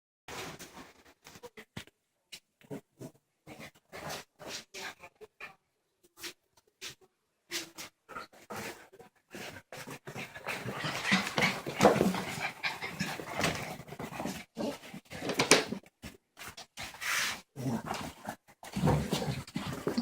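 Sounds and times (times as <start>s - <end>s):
puppies panting: 9.5s - 14.6s.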